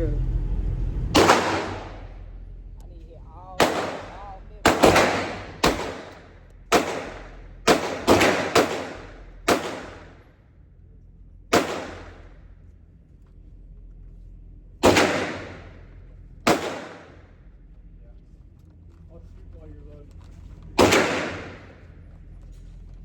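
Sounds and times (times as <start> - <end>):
gunshots with echo: 1.1 - 2.2, 3.6 - 10.3, 11.5 - 12.4, 14.8 - 15.9, 16.5 - 17.3, 20.8 - 21.9.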